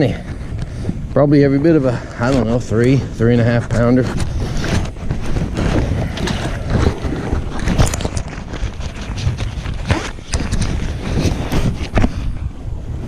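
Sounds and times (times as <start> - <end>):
wind buffeting microphone: 0.0 - 13.0
knocks and rustles: 2.3 - 12.4.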